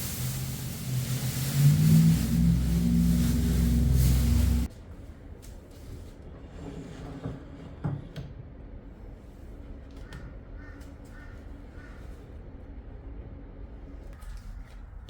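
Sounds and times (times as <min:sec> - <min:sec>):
low background hum: 0:00.0 - 0:15.0
crow cawing: 0:10.1 - 0:12.1.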